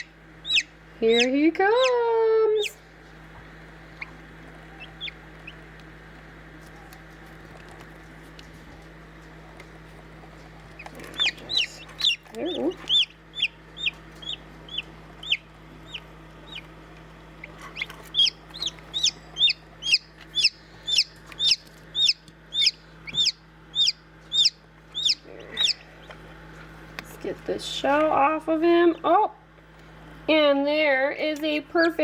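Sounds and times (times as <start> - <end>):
chick peeping: 0.0 - 2.8, 3.9 - 5.7, 10.8 - 16.7, 17.4 - 26.2.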